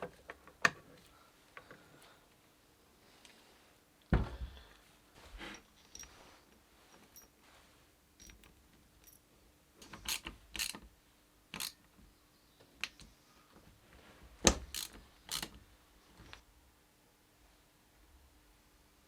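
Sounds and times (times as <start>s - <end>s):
metallic clicks and knocks of tools: 8.2s - 9.2s, 9.8s - 10.9s, 11.5s - 11.8s, 14.5s - 15.6s.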